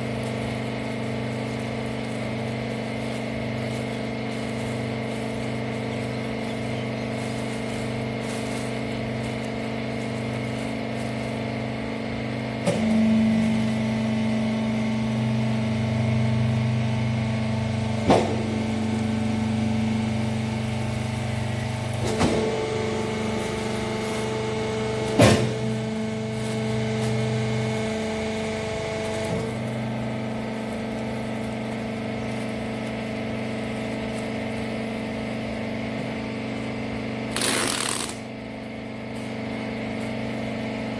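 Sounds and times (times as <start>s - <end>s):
hydraulic baler motor humming: 0.0s - 40.9s.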